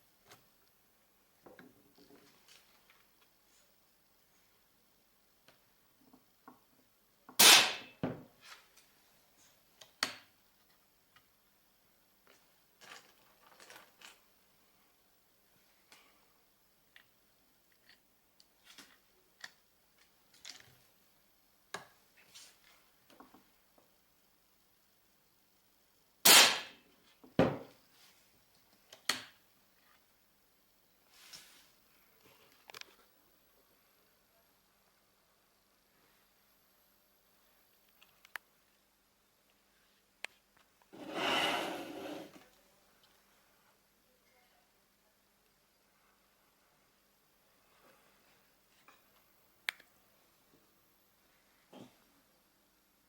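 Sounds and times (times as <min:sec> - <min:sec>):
air rifle shots: 0:07.4 - 0:07.9, 0:26.3 - 0:26.8
air rifle shot crack: 0:26.3 - 0:26.8.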